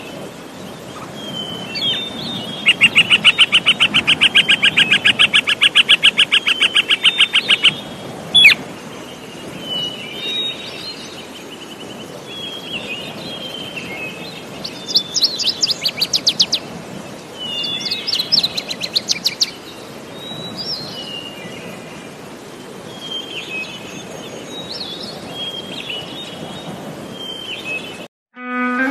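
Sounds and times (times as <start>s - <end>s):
birds chirping: 0.0s - 9.6s, 13.9s - 16.8s, 17.6s - 19.7s.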